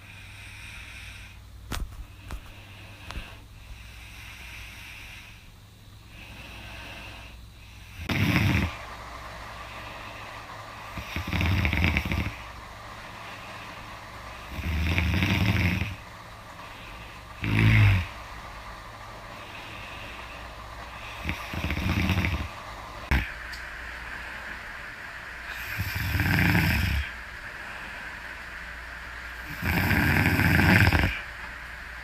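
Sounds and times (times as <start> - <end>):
steady low hum: 0.0 - 32.0
person snoring loudly: 6.1 - 8.8, 9.6 - 12.6, 13.2 - 16.0, 16.6 - 18.2, 19.3 - 23.4, 25.4 - 27.2, 29.4 - 31.4.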